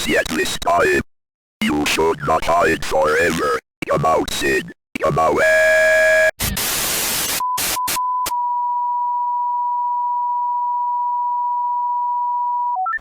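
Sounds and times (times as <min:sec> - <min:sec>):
tv static bursts: 0:05.9 - 0:08.0
electronic beep tone: 0:07.4 - 0:13.0.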